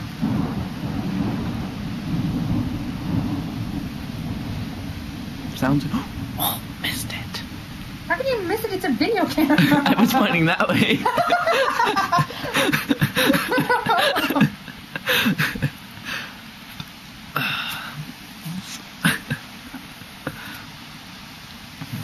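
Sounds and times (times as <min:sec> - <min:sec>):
people chuckling and murmuring: 0:09.3 - 0:15.8.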